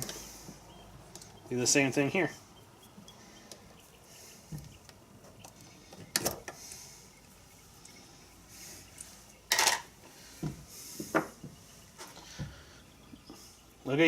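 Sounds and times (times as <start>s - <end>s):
small parts clicking and clattering: 9.0s - 9.9s.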